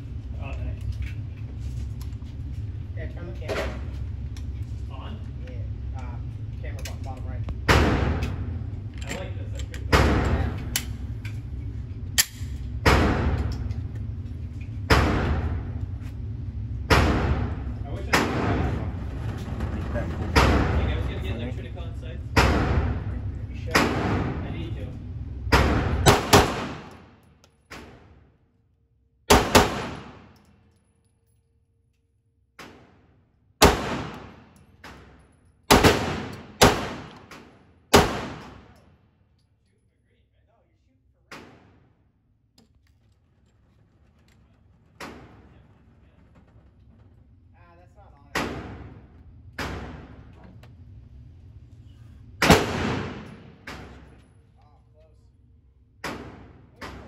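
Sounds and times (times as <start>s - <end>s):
loud gunshots: 7.6s - 8.3s, 12.8s - 13.4s, 16.9s - 18.8s, 22.4s - 24.5s, 25.5s - 26.9s, 29.3s - 30.3s, 33.6s - 34.5s, 35.7s - 38.7s, 52.4s - 54.0s, 56.0s - 57.0s.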